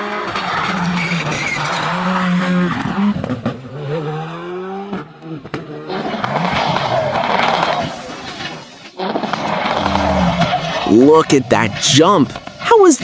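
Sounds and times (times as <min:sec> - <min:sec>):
car engine revving: 0:09.3 - 0:11.1.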